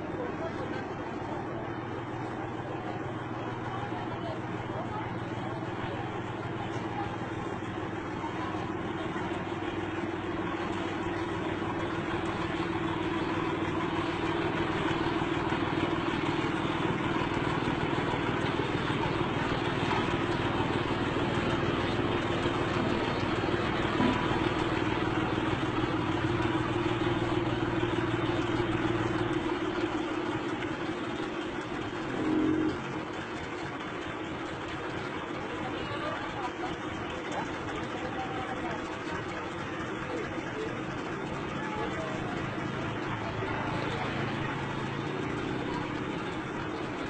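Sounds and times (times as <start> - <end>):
road roller diesel engine running: 0.0 - 47.0.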